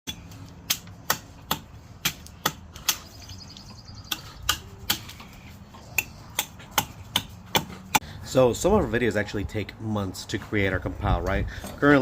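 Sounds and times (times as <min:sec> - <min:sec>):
tool striking wood: 0:00.1 - 0:03.0, 0:06.0 - 0:08.0.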